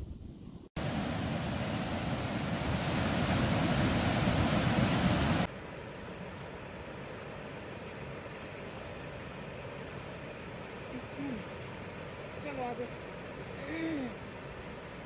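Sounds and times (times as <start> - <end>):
waterfall rushing: 0.8 - 5.5.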